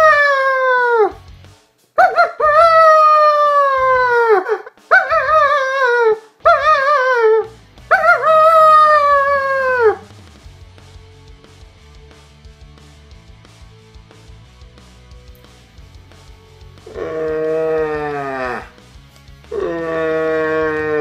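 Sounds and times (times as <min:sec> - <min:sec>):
man imitating dog howl: 0:00.0 - 0:01.2, 0:02.0 - 0:10.0, 0:16.9 - 0:18.7, 0:19.5 - 0:21.0
faint background music: 0:00.0 - 0:21.0.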